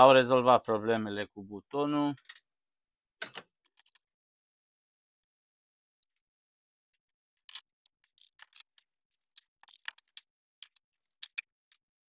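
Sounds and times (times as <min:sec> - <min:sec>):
hands handling plastic parts: 0:07.4 - 0:11.9.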